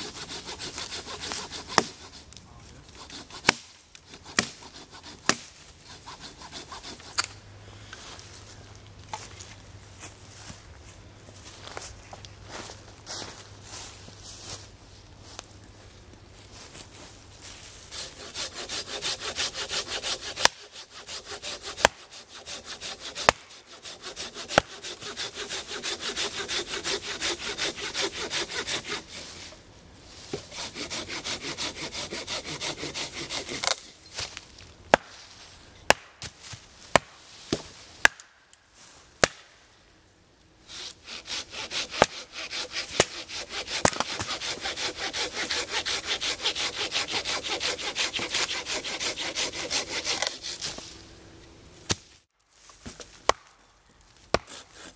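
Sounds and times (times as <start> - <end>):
hand saw cutting wood: 0.0 - 7.4, 17.9 - 29.6, 30.2 - 34.0, 40.7 - 51.0, 54.3 - 54.9.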